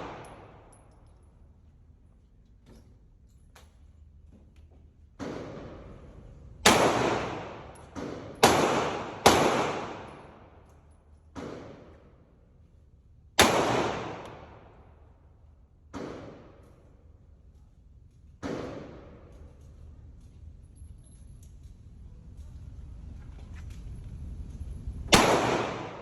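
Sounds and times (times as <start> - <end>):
pistol shots echoing: 0.0 - 0.6, 6.6 - 10.4, 13.4 - 14.7, 25.1 - 26.0.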